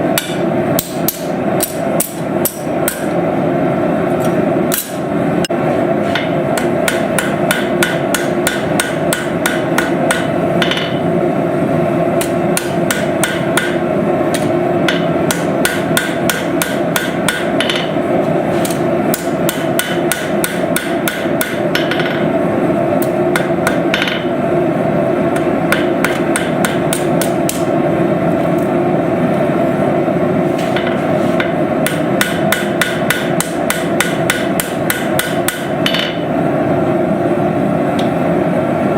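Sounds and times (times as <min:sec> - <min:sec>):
hammer striking hot steel on anvil: 0:00.0 - 0:03.2, 0:04.2 - 0:05.1, 0:06.1 - 0:11.1, 0:12.2 - 0:22.4, 0:23.0 - 0:24.4, 0:25.3 - 0:27.7, 0:30.7 - 0:36.3
steady hum: 0:00.0 - 0:38.9.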